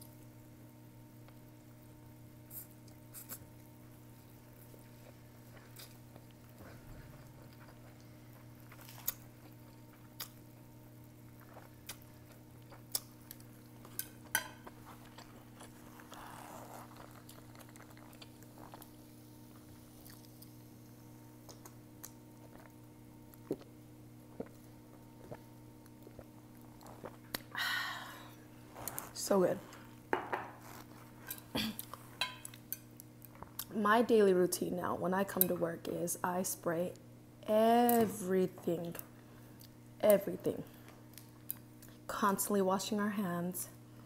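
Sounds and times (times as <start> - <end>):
steady low hum: 0.0 - 44.0
person chewing noodles: 4.6 - 20.7, 21.4 - 27.5.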